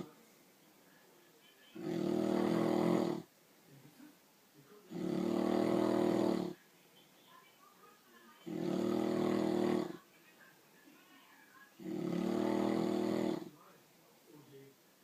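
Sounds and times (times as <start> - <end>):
loud buzzing snoring: 1.8 - 3.3, 4.9 - 6.6, 8.4 - 10.0, 11.8 - 13.5.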